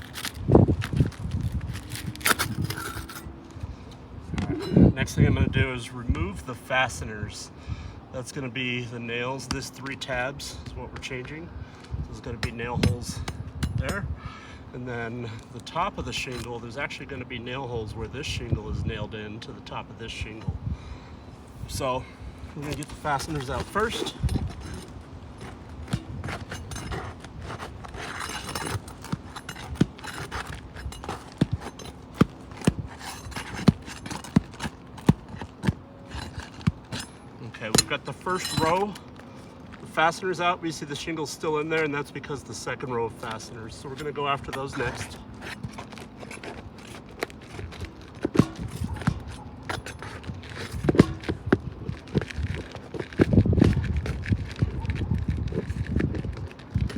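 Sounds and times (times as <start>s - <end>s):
tool scraping under shingle: 0.0s - 3.9s, 12.2s - 14.2s, 14.9s - 17.2s, 21.5s - 56.9s.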